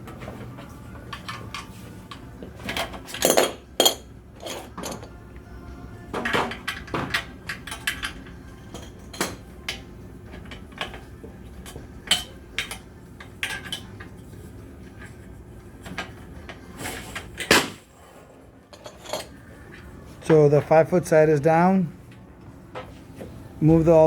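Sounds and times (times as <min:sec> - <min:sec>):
metal parts clinking: 0:01.1 - 0:01.7, 0:02.7 - 0:05.2, 0:06.2 - 0:14.2, 0:18.7 - 0:19.4.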